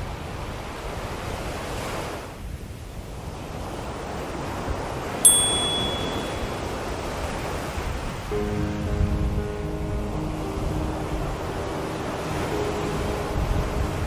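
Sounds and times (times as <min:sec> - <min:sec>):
ocean waves washing: 0:03.0 - 0:14.0
high bell strike ringing: 0:05.2 - 0:06.8.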